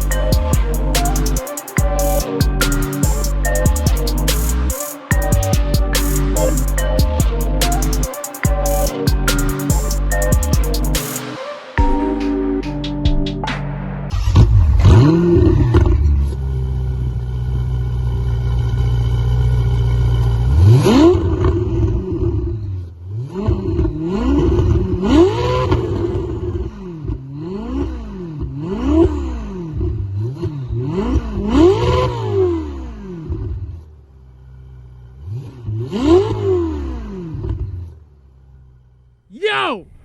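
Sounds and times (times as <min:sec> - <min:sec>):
car engine starting and revving: 0:14.1 - 0:39.1.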